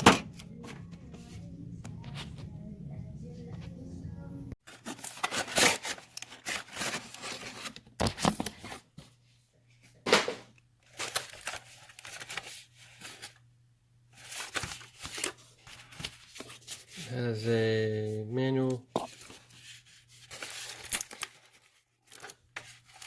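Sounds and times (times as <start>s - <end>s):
packaging tearing and crinkling: 4.7s - 8.6s, 10.9s - 13.3s, 20.2s - 23.0s.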